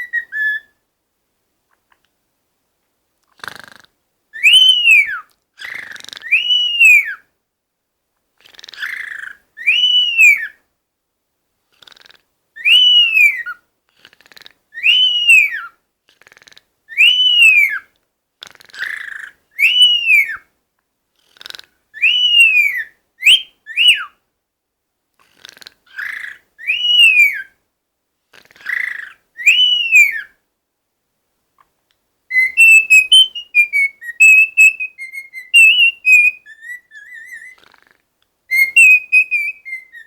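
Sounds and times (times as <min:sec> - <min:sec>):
cockatiel whistling: 0:00.0 - 0:00.7, 0:04.4 - 0:05.2, 0:12.6 - 0:13.5, 0:14.8 - 0:15.7, 0:17.0 - 0:17.8, 0:19.6 - 0:20.4, 0:22.0 - 0:24.1, 0:26.6 - 0:27.5, 0:29.4 - 0:30.3, 0:32.3 - 0:37.6, 0:38.5 - 0:40.0
bird raspy hissing: 0:03.4 - 0:03.9, 0:05.6 - 0:06.6, 0:08.4 - 0:09.4, 0:11.7 - 0:12.3, 0:13.2 - 0:14.6, 0:16.1 - 0:16.7, 0:18.4 - 0:19.4, 0:21.2 - 0:21.7, 0:25.2 - 0:26.5, 0:28.3 - 0:29.3, 0:32.4 - 0:40.0.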